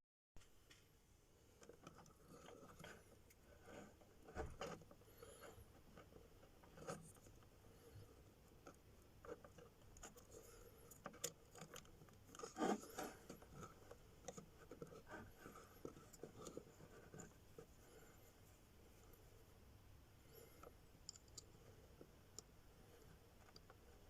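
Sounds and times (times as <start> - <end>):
small handling clicks: 8.5 - 17.3, 20.6 - 22.5
rubbing scrapes: 12.4 - 18.2.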